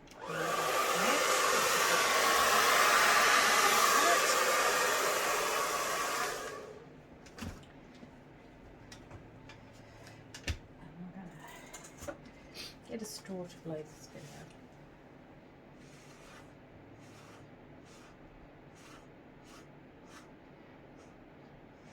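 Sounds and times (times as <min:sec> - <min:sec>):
hair dryer blowing: 0:00.1 - 0:06.8.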